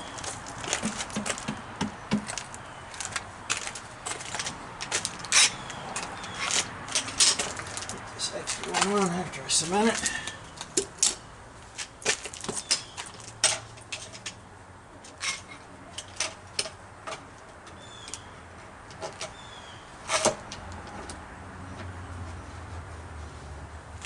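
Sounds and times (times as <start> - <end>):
hand tools clicking and knocking: 0.2 - 9.2.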